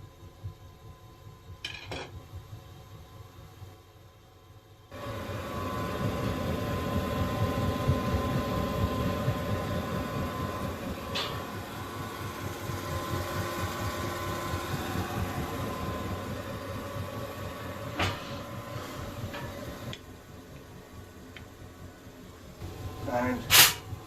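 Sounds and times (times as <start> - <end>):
boiler fan rushing: 0.0 - 24.0
faint steady whine: 0.0 - 24.0
fluctuating low rumble: 5.2 - 24.0.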